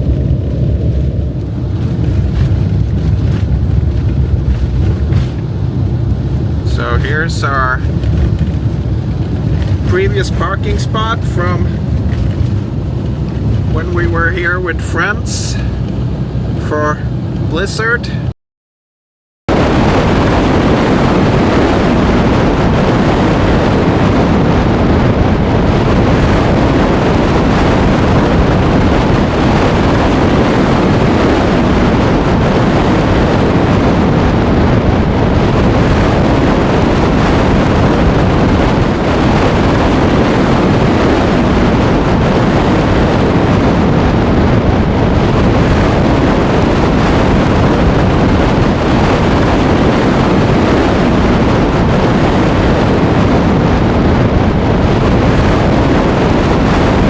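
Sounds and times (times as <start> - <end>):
loud rushing noise with rumble: 0.0 - 18.3, 19.5 - 57.0.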